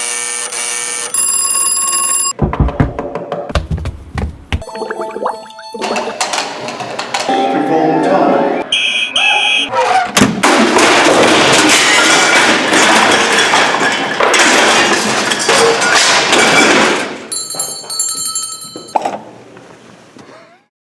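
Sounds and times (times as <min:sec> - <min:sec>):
knock: 0:02.4 - 0:04.6
bell ringing: 0:07.3 - 0:08.6, 0:17.3 - 0:19.0.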